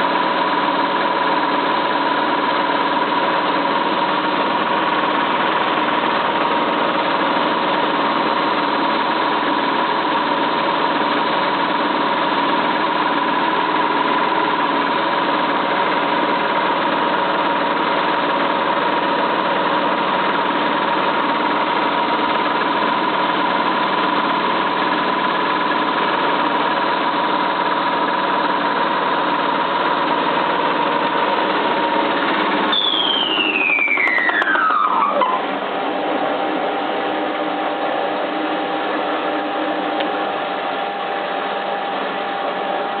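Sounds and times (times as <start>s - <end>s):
washing machine spinning with whine: 0.0s - 43.0s.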